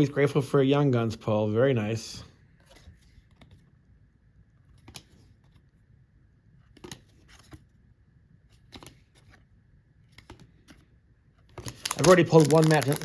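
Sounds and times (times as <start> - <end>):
trading cards sliding and flicking: 11.5 - 13.0.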